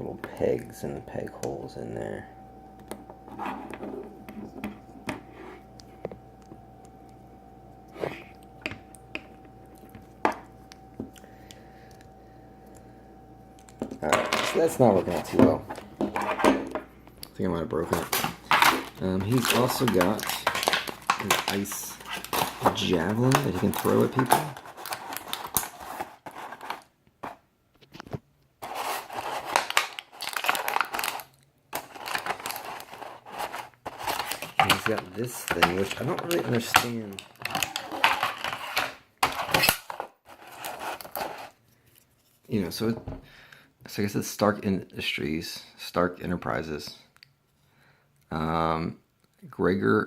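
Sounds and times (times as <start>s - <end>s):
faint steady hum: 0.0s - 50.0s
packaging crinkling and rustling: 17.8s - 42.4s.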